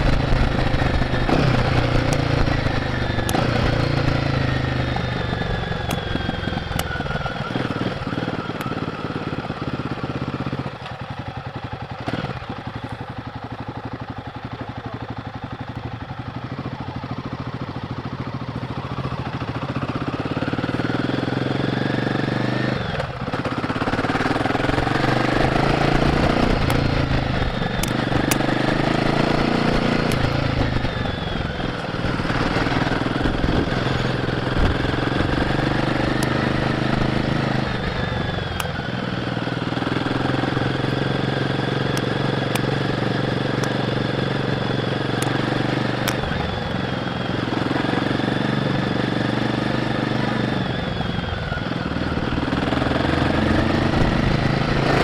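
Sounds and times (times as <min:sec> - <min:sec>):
motorcycle engine revving: 0:00.0 - 0:55.0.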